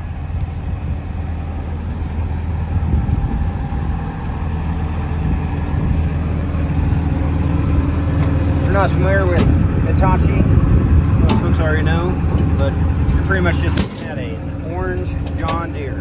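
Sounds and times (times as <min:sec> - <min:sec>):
excavator diesel engine running: 0:00.1 - 0:16.0.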